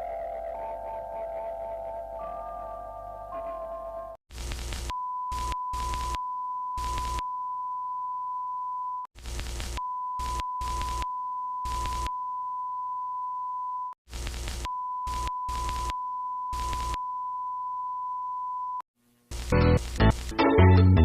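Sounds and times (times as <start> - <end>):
static bursts: 4.3 - 6.2, 6.8 - 7.2, 9.2 - 12.1, 14.1 - 17.0, 19.1 - 20.4.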